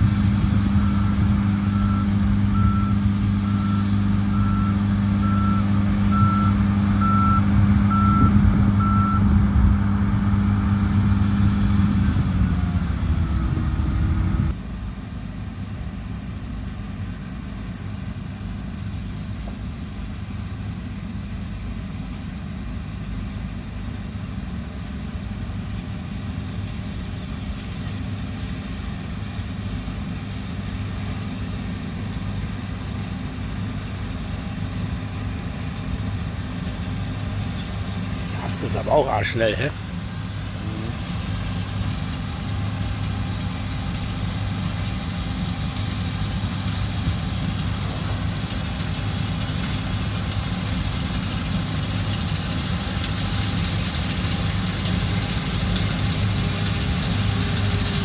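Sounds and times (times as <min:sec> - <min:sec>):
diesel engine running: 0:00.0 - 0:58.0
reversing alarm beeping: 0:00.8 - 0:09.2.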